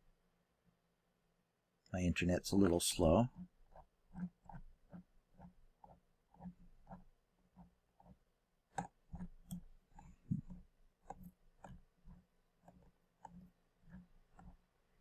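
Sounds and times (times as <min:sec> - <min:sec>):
mouse and keyboard clicks: 0:07.6 - 0:14.6.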